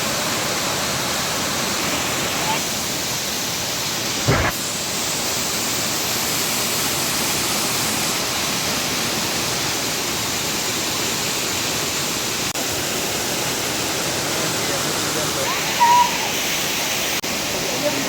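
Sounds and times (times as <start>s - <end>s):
waterfall rushing: 0.0s - 18.0s
low thump: 4.2s - 4.6s.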